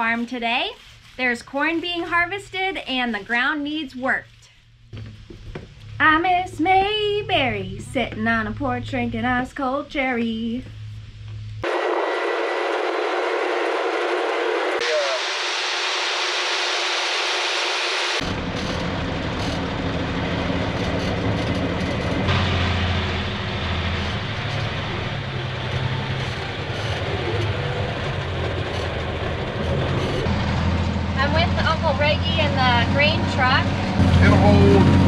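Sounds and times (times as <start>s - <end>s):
farm machinery engine rumble: 18.2s - 35.0s
road noise: 18.2s - 35.0s
wind: 18.2s - 35.0s.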